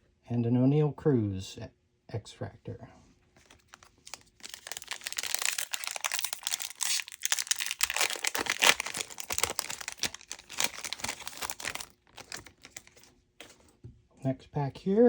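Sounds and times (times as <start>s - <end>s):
foil wrapper crinkling and tearing: 3.4s - 13.6s.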